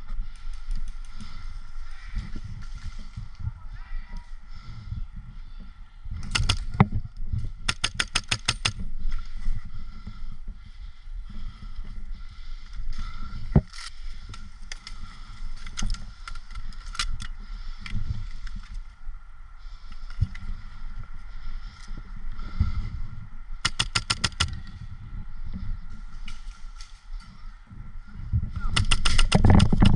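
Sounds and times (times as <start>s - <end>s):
rumbling handling noise: 5.1s - 29.9s
airsoft rifle shots: 23.6s - 24.5s.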